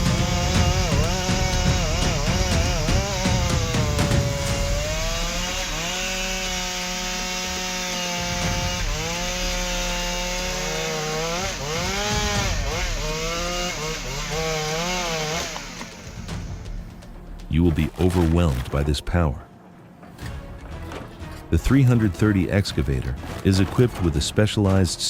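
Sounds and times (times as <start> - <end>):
chainsaw cutting wood: 0.0 - 18.5.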